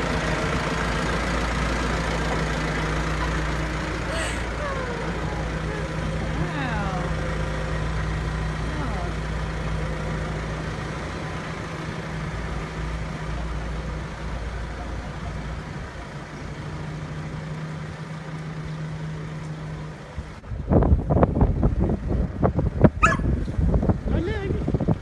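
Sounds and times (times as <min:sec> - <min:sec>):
tractor engine idling: 0:00.0 - 0:20.4.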